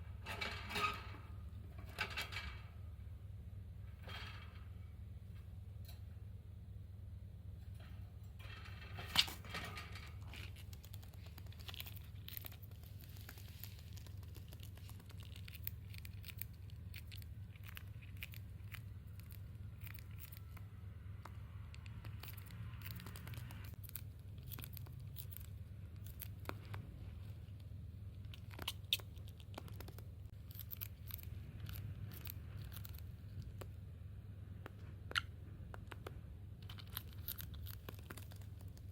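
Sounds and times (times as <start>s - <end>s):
parakeet crunching cabbage leaf: 9.1s - 33.8s, 34.6s - 38.9s.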